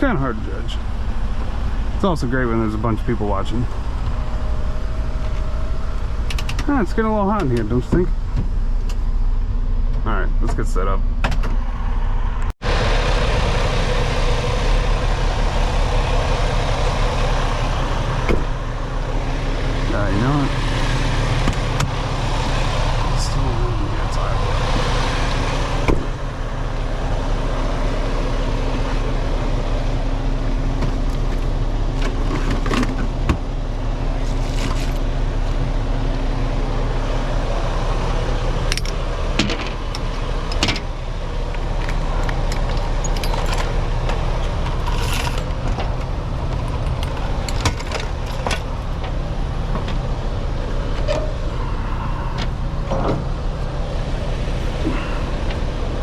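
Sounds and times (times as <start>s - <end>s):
diesel truck engine rumbling: 0.0s - 56.0s
clicks and rattles: 6.2s - 6.7s, 41.5s - 50.1s.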